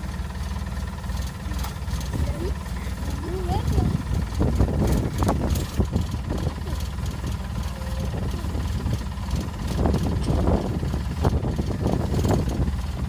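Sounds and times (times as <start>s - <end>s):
combine harvester engine rumbling: 0.0s - 13.0s.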